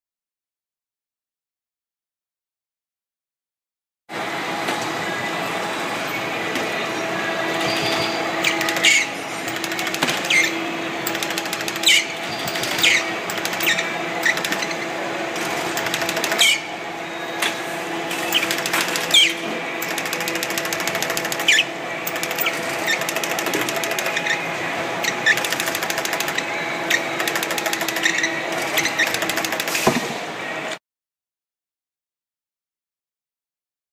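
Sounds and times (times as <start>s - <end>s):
machine humming: 4.1s - 30.8s
belt squealing: 7.6s - 14.9s.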